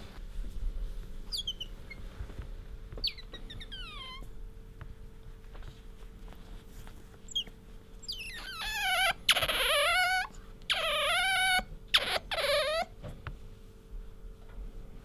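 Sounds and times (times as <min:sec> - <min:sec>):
otter squeaking: 0:01.3 - 0:02.1, 0:03.0 - 0:04.3, 0:07.3 - 0:13.0.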